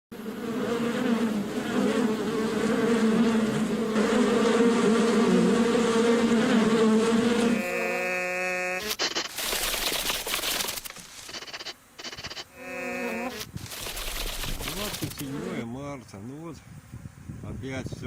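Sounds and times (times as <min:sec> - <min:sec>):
honey bees buzzing: 0:00.1 - 0:15.7.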